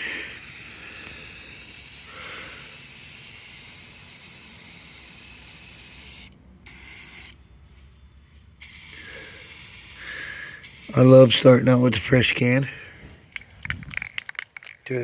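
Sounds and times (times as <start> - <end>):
spray paint can hissing: 0.0 - 7.4, 8.6 - 11.5.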